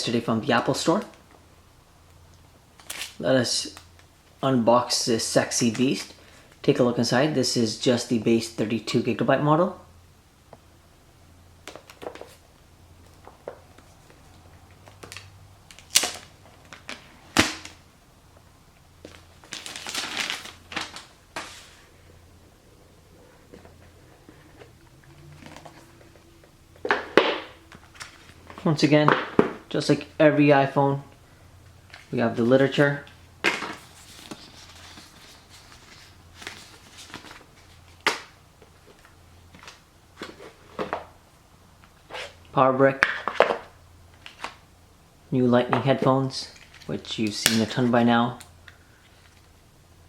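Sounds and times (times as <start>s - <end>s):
faint low hum: 0.0s - 50.0s
packaging rustling and scraping: 19.0s - 22.0s, 23.2s - 28.6s, 33.6s - 38.0s.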